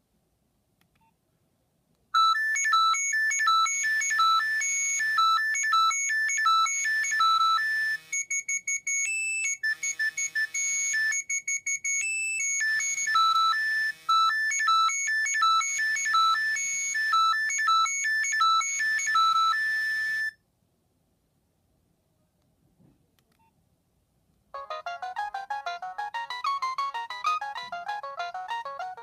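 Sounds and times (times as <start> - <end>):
polyphonic ringtone tune: 2.2 - 20.3, 24.6 - 29.0.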